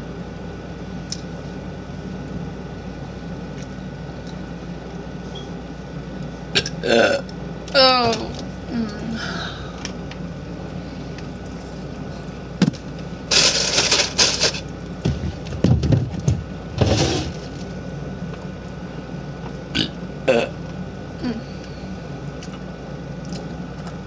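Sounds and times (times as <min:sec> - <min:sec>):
woman burping: 0:06.6 - 0:09.4, 0:19.7 - 0:20.6, 0:21.2 - 0:21.5.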